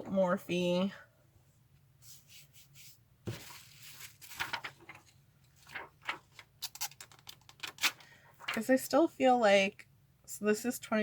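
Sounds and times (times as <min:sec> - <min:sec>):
packaging rustling: 0:03.4 - 0:08.6.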